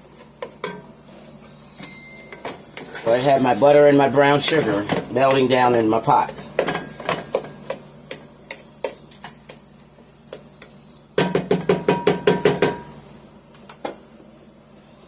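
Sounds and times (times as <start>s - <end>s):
utensil knocking against pot: 11.2s - 12.9s.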